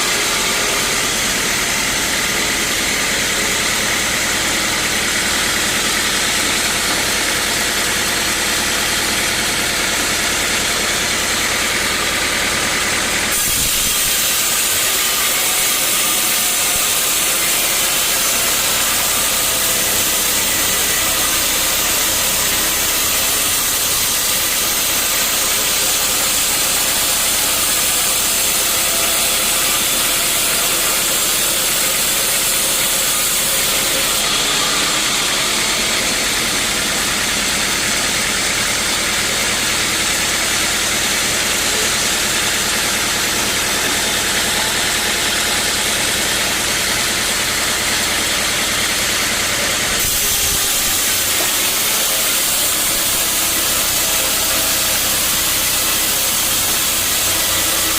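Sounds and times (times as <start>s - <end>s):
machine hum: 0.0s - 57.9s
saw cutting wood: 0.0s - 57.9s.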